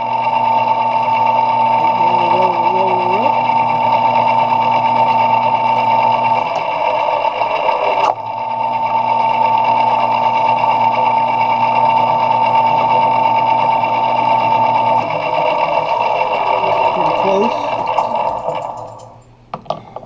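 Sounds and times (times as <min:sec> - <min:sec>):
metal lathe whining: 0:00.0 - 0:19.4.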